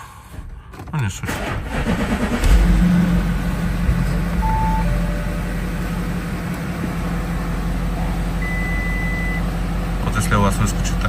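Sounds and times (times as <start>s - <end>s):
car engine idling: 1.4s - 11.0s
thin high tone: 2.6s - 6.4s
short electronic beeps: 4.4s - 5.6s, 8.4s - 9.4s.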